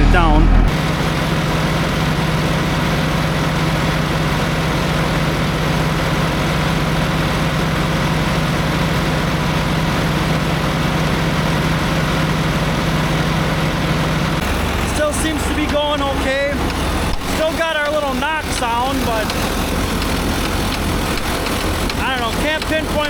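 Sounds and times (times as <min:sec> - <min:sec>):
tractor diesel engine running: 0:00.0 - 0:23.0.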